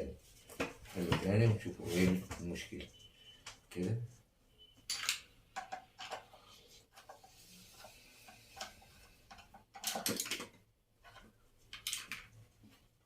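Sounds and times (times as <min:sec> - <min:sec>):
parts clattering: 0:04.8 - 0:12.4
small hard parts clicking: 0:07.8 - 0:12.4.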